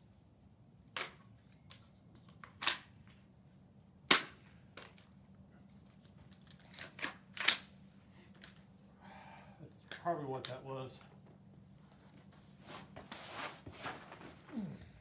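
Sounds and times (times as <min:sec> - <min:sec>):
rifle cracks: 0:04.1 - 0:05.0, 0:06.7 - 0:07.7.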